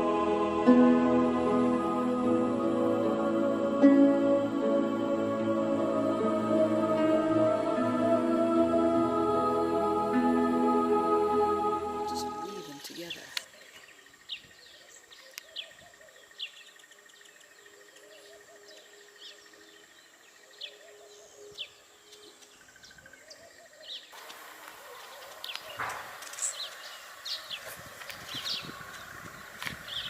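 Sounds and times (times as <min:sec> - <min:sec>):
faint outdoor background: 0:00.0 - 0:30.0
small songbirds chirping: 0:12.1 - 0:30.0.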